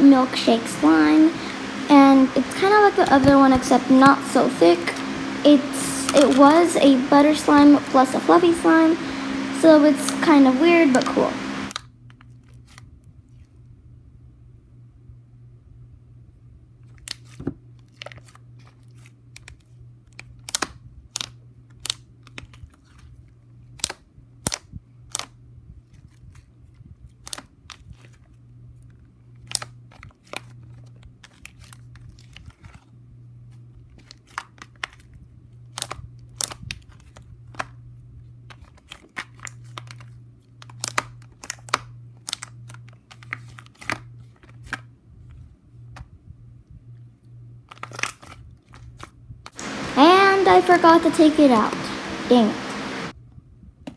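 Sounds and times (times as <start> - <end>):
steady low hum: 0.0 - 11.7, 49.6 - 53.1.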